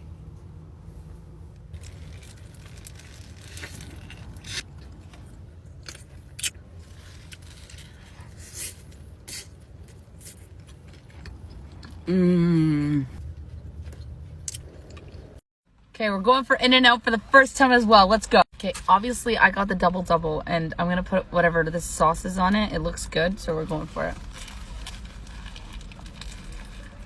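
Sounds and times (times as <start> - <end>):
food rustling and crunching: 1.7 - 12.1, 23.6 - 27.0
person humming: 12.1 - 13.2.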